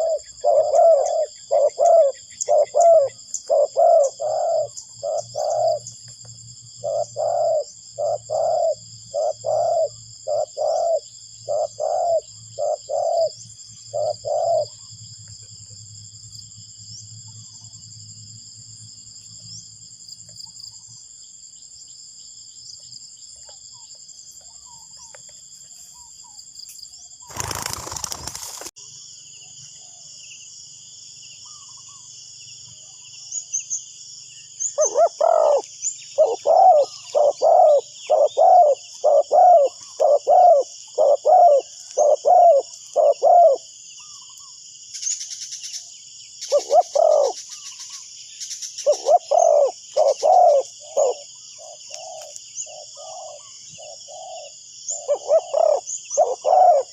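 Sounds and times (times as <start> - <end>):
dove cooing: 0.0 - 6.0, 6.8 - 14.8, 27.3 - 28.7, 34.7 - 43.7, 46.5 - 47.4, 48.8 - 56.9
insects chirring: 0.0 - 56.9.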